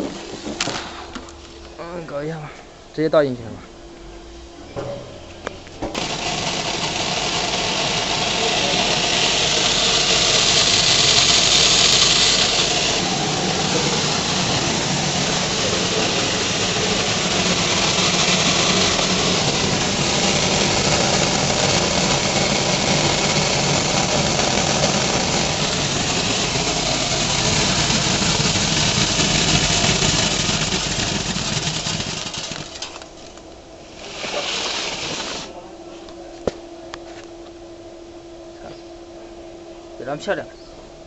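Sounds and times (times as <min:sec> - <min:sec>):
sorting machine hissing rattle: 0:05.0 - 0:35.6.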